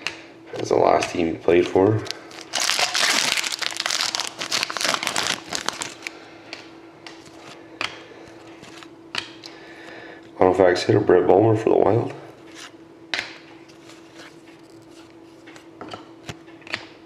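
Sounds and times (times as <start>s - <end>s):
foil wrapper crinkling: 1.9s - 6.2s.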